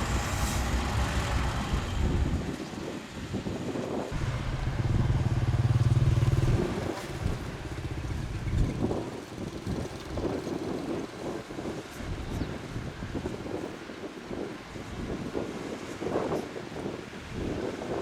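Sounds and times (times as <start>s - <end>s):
diesel machinery engine running: 4.2s - 10.6s.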